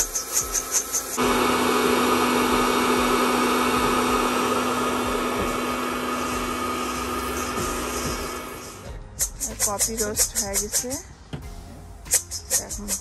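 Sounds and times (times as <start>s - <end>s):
coffee roaster fan humming: 0.0s - 9.0s.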